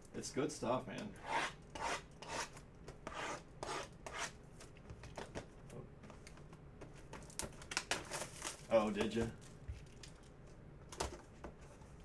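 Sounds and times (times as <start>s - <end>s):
cardboard and plastic packaging scraping: 7.9s - 10.0s.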